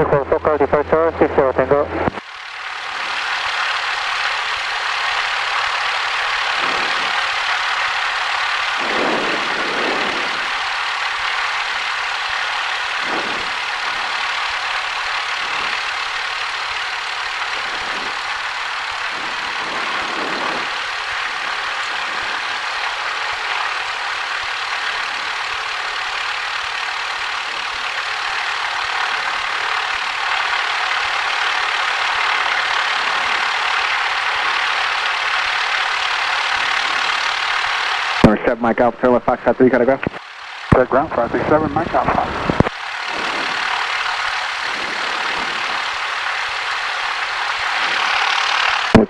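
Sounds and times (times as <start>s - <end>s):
light aircraft engine and cabin noise: 0.0s - 2.2s.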